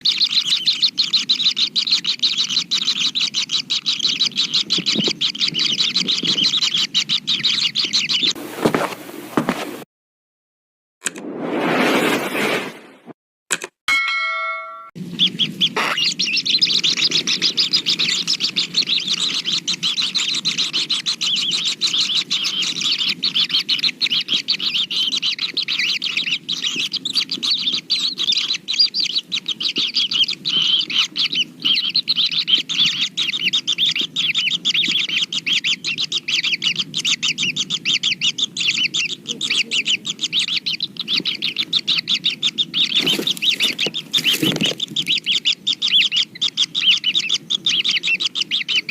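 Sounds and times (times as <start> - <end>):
birds chirping rapidly: 0.0 - 8.4, 15.0 - 48.9.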